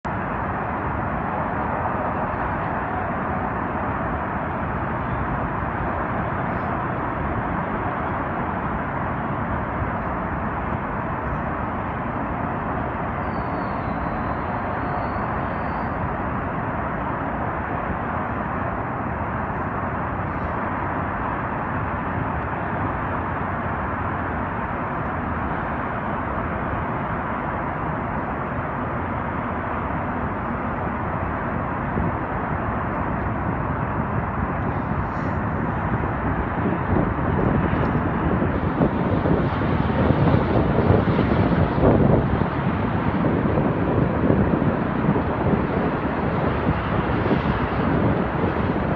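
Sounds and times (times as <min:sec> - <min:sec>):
distant city traffic: 0:00.0 - 0:48.9
faint high whistle: 0:13.2 - 0:16.0.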